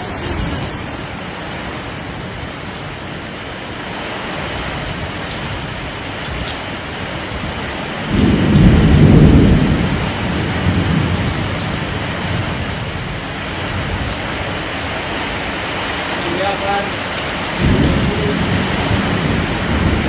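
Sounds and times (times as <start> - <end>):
heavy rain hissing: 0.0 - 20.0
low thunder rumble: 4.6 - 15.5, 17.2 - 20.0.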